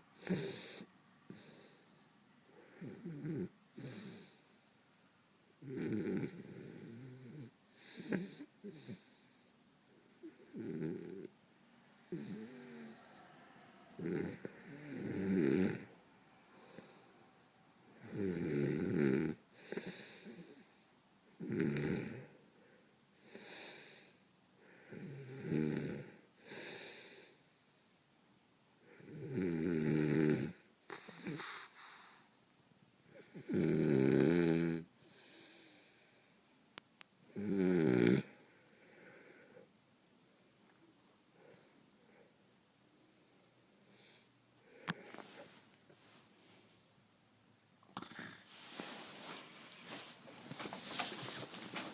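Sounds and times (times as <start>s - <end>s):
man snoring heavily: 0.2s - 1.8s, 2.7s - 4.4s, 5.6s - 9.1s, 10.2s - 11.3s, 12.1s - 13.2s, 13.9s - 16.0s, 18.0s - 20.6s, 21.4s - 22.4s, 24.8s - 27.2s, 29.0s - 31.4s, 33.2s - 35.4s, 37.3s - 39.4s.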